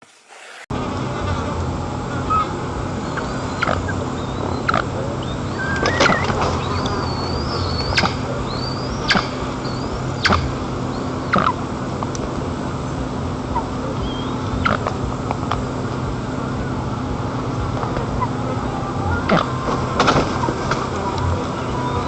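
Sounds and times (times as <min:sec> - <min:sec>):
steady background rush: 0:00.0 - 0:22.0
sharp downward bird calls: 0:02.1 - 0:11.6, 0:13.6 - 0:14.9
thin warbling whistles: 0:02.1 - 0:11.6, 0:13.5 - 0:14.8.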